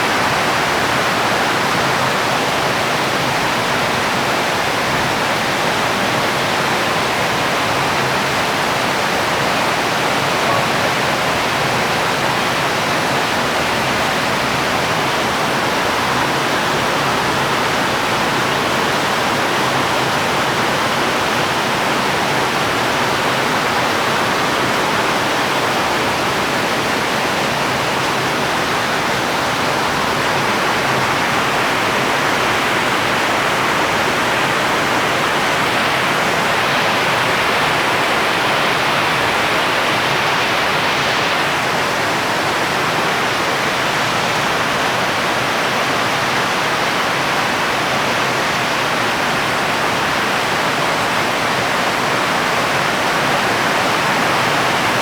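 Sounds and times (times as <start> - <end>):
heavy rain hissing: 8.3 - 42.0.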